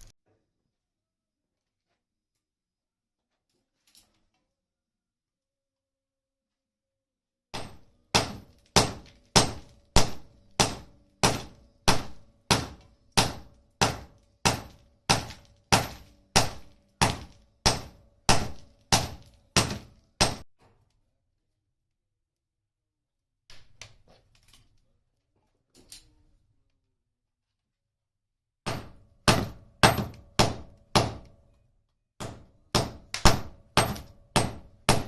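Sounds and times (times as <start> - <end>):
hammer forging steel: 7.6 - 20.5, 28.7 - 31.4, 32.2 - 35.0.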